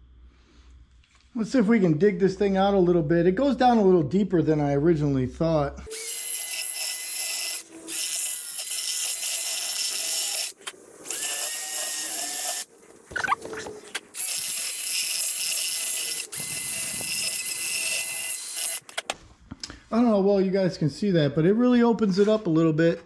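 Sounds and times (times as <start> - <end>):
power grinder whining: 5.9 - 12.7, 13.4 - 19.2.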